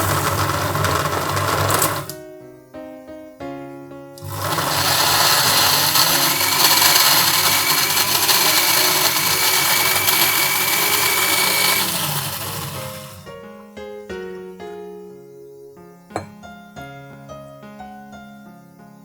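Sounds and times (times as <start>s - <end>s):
mixer grinder whining: 0.0s - 2.2s, 4.2s - 13.3s.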